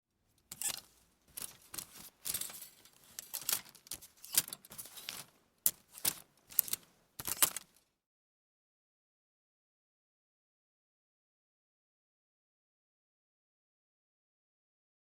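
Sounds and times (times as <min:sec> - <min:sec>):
clothes hangers clattering: 0:00.4 - 0:07.8.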